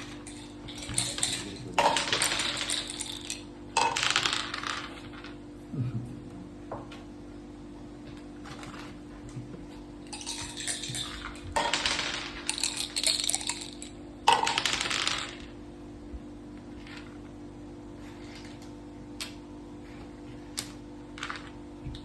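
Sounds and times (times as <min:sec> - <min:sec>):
dice clattering on a board: 0:00.0 - 0:05.4, 0:10.1 - 0:15.5.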